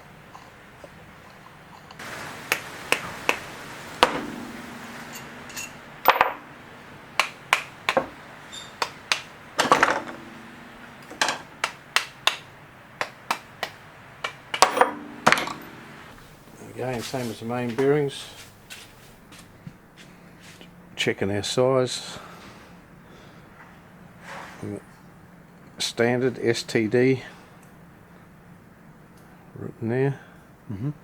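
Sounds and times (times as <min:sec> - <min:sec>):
metal engine parts and tools clinking: 0:04.0 - 0:06.7, 0:08.0 - 0:11.6, 0:14.5 - 0:16.2.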